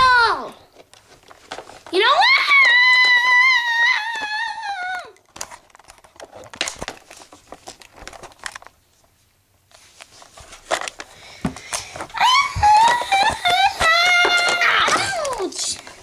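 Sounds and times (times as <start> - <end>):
crinkling: 0.4 - 16.0.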